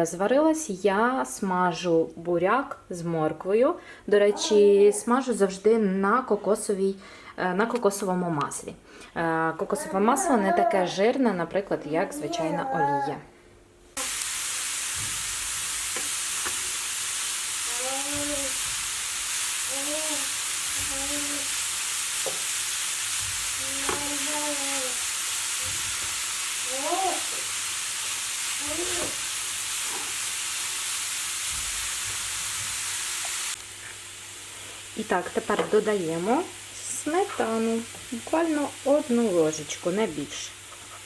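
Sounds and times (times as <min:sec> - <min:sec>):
utensil stirring and knocking in pan: 0:14.0 - 0:24.8
vegetables sizzling in a pan: 0:14.0 - 0:41.0.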